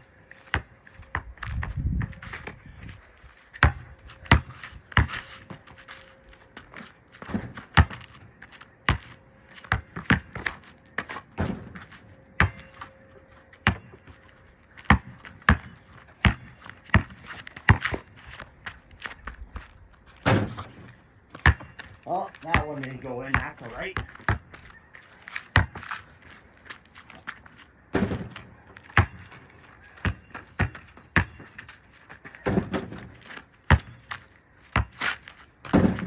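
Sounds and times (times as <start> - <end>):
basketball bouncing on hard surface: 3.6 - 5.2, 7.2 - 8.2, 8.9 - 12.7, 14.8 - 18.2, 20.2 - 24.6, 25.6 - 25.9, 27.9 - 29.4, 30.0 - 31.7, 32.3 - 35.0, 35.6 - 36.0.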